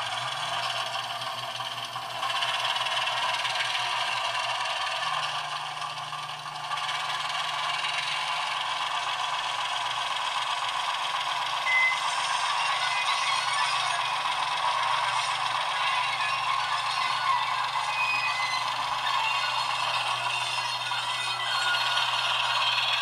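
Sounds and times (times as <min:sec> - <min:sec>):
model diesel engine sound from speaker: 0:00.0 - 0:23.0
model train rattling on track: 0:00.0 - 0:23.0
high squeak: 0:11.7 - 0:23.0.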